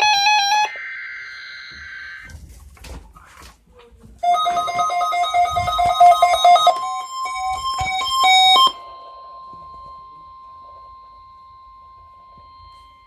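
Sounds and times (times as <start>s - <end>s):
steady warning tone: 4.2s - 13.0s.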